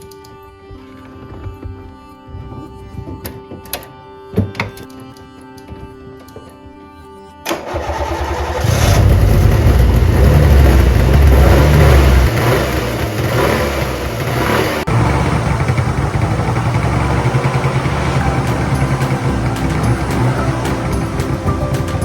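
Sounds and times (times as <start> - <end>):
two-stroke engine starting and revving: 7.5 - 22.0.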